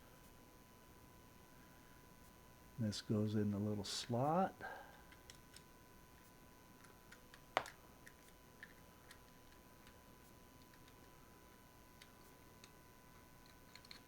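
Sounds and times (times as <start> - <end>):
small clicks of toy car parts: 5.1 - 5.7, 6.8 - 10.0, 10.6 - 11.2, 12.0 - 14.0.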